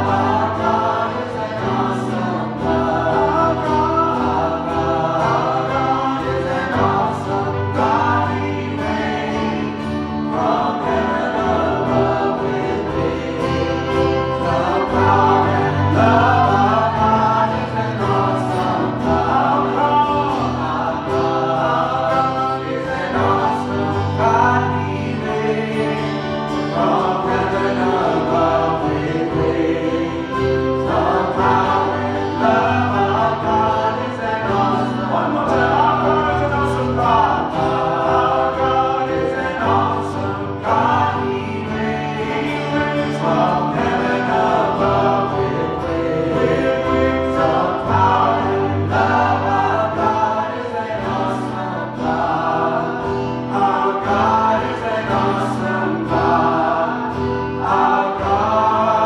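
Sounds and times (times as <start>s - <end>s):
voices singing worship song: 0.0s - 59.0s.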